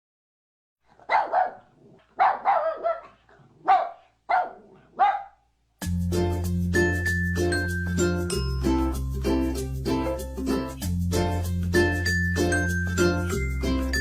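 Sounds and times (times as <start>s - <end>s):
dog barking: 0.9s - 5.5s
chiming music: 6.2s - 14.0s.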